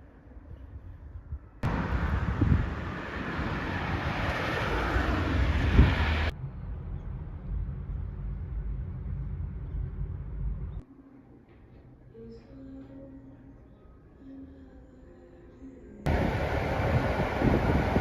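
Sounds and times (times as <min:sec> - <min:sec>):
low steady hum: 0:00.0 - 0:18.0
train rushing rumble: 0:01.6 - 0:10.7, 0:16.1 - 0:18.0.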